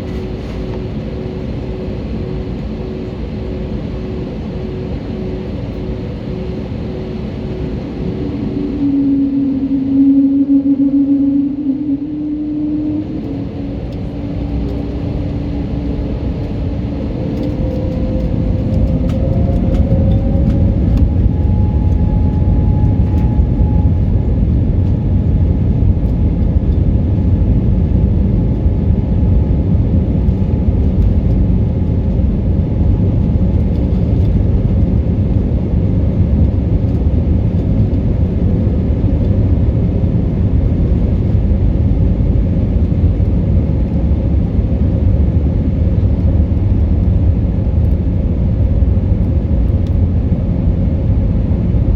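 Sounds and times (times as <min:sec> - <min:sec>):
jet engines spooling up: 0:00.0 - 0:25.7
jet takeoff rumble: 0:00.0 - 0:51.9.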